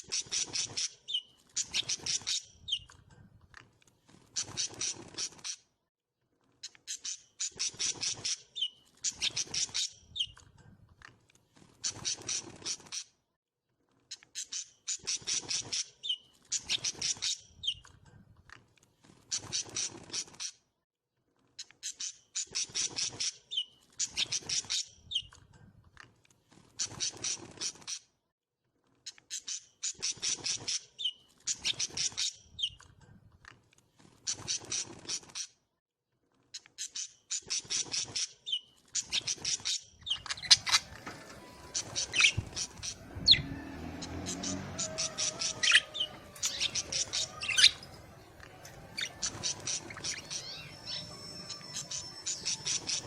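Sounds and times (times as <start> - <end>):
small birds chirping and trilling: 0.0 - 5.6, 6.5 - 10.7, 11.4 - 13.2, 14.0 - 18.2, 18.9 - 20.6, 21.6 - 25.5, 26.4 - 28.1, 29.0 - 33.0, 34.0 - 35.6, 36.6 - 53.0
birds whistling: 37.5 - 53.0.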